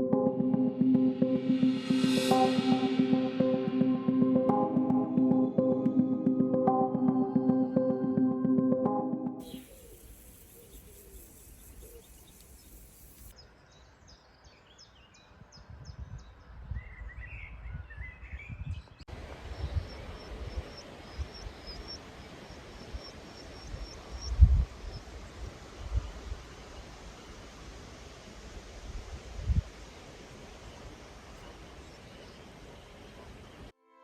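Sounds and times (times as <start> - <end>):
small birds chirping: 9.4 - 25.1.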